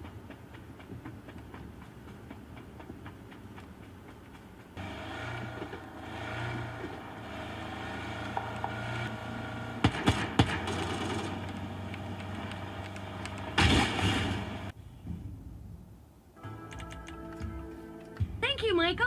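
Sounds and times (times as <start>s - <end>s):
vehicle engine running: 0.0s - 14.7s
sharp cracks: 9.8s - 14.7s.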